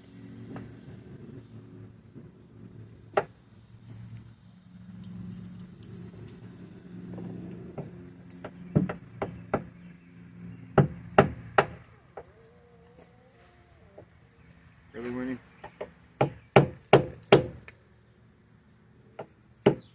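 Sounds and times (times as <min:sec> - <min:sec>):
steady low hum: 0:00.0 - 0:19.8.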